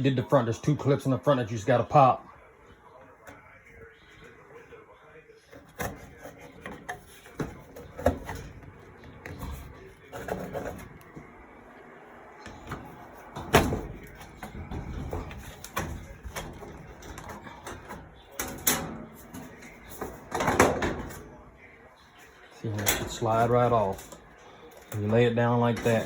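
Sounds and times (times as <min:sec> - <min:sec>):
metal panel clips popping: 0:12.5 - 0:21.3, 0:22.8 - 0:24.2.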